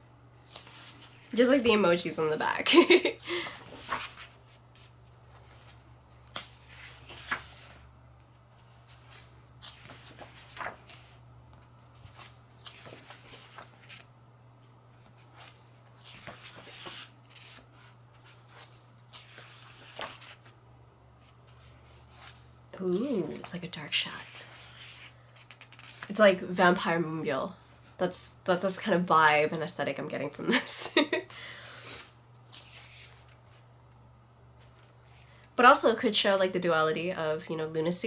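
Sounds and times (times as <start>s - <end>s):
low electrical hum: 0.0s - 38.0s
pages turning: 0.4s - 2.4s, 3.3s - 7.8s, 8.5s - 14.1s, 14.9s - 20.6s, 21.2s - 23.5s, 24.2s - 26.1s, 32.0s - 33.6s.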